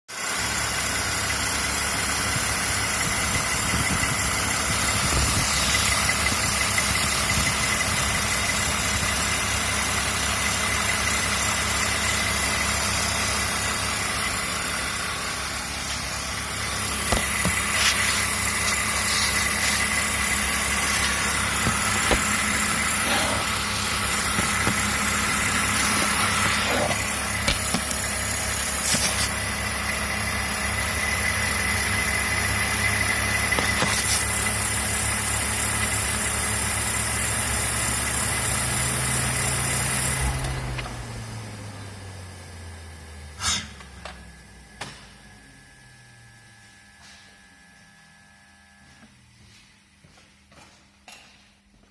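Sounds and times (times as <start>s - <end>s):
car engine idling: 0.2s - 42.2s
thin high whine: 15.9s - 29.9s.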